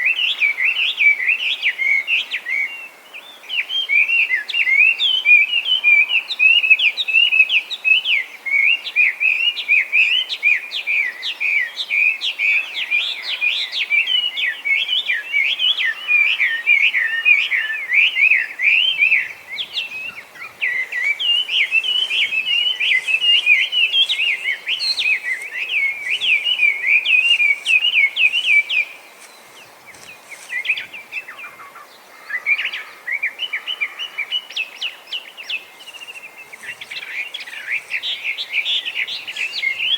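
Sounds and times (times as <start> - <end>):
bird singing whistled phrases: 13.6 - 29.4.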